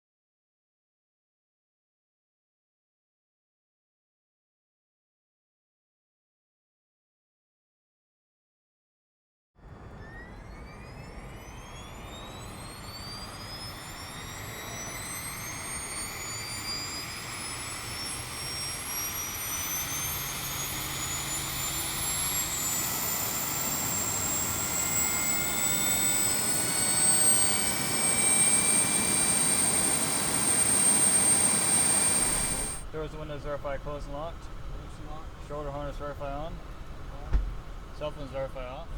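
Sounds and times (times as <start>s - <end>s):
gas turbine whine spooling up: 9.6s - 38.9s
jet rush: 13.6s - 32.8s.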